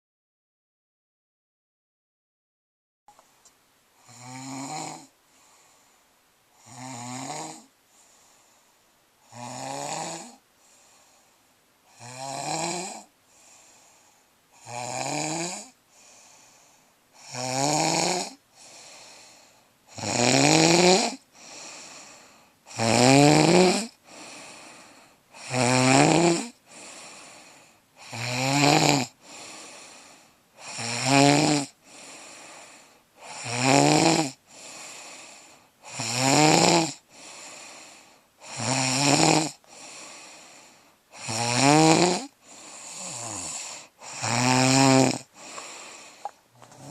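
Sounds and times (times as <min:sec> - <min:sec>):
person snoring: 0:04.0 - 0:05.8, 0:06.6 - 0:08.4, 0:09.2 - 0:11.3, 0:11.9 - 0:46.9
exhaled breath: 0:05.3 - 0:06.1, 0:07.9 - 0:08.9, 0:10.6 - 0:11.5, 0:13.3 - 0:14.4, 0:15.9 - 0:17.0, 0:18.5 - 0:19.8, 0:21.3 - 0:22.6, 0:24.0 - 0:25.2, 0:26.6 - 0:27.9, 0:29.2 - 0:30.4, 0:31.8 - 0:33.4, 0:34.5 - 0:35.8, 0:37.1 - 0:38.3, 0:39.6 - 0:41.0, 0:42.4 - 0:44.1, 0:45.3 - 0:46.9.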